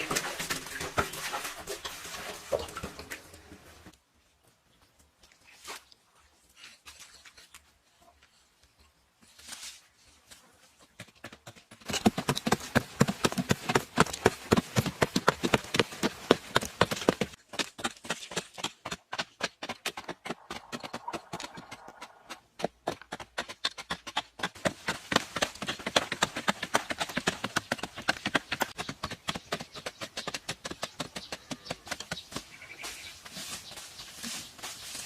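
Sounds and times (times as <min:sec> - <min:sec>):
sharp knocks and taps: 0:17.6 - 0:27.2.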